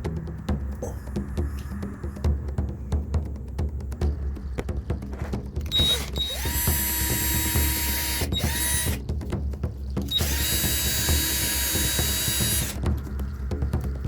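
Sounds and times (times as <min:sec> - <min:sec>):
power drill whining: 0:05.7 - 0:09.0, 0:10.1 - 0:12.8.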